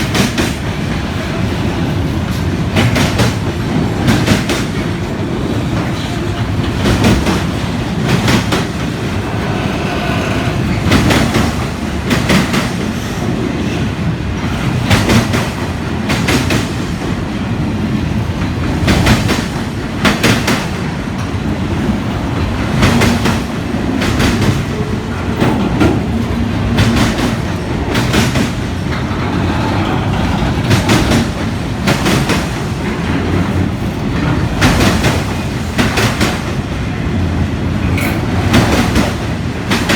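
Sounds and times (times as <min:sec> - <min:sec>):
freight cars rumbling past: 0:07.2 - 0:13.0.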